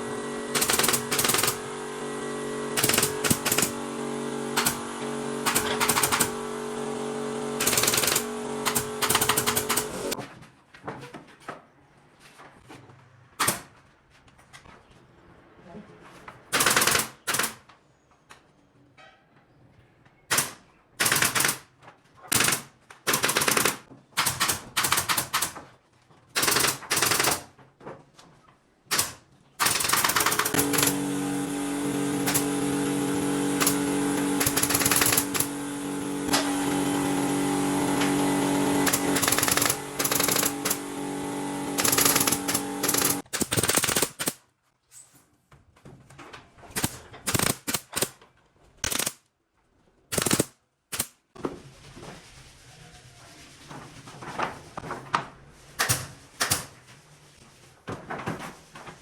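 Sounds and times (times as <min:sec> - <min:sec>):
steady motor hum: 0:00.0 - 0:10.2, 0:30.4 - 0:43.2
nail gun firing: 0:00.4 - 0:10.2, 0:13.4 - 0:13.7, 0:16.5 - 0:17.7, 0:20.3 - 0:21.7, 0:22.3 - 0:25.6, 0:26.4 - 0:27.6, 0:28.9 - 0:44.4, 0:46.7 - 0:48.2, 0:48.8 - 0:49.3, 0:50.1 - 0:51.2, 0:55.8 - 0:56.8.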